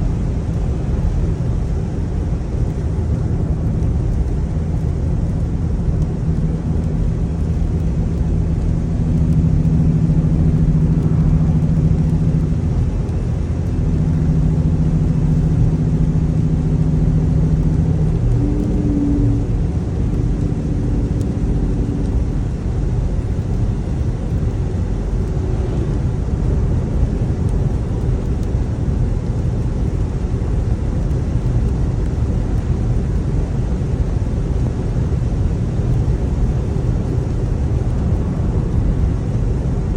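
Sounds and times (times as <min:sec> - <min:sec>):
car engine and tyres droning: 0:00.0 - 0:39.9
rising humming tone: 0:02.6 - 0:28.6.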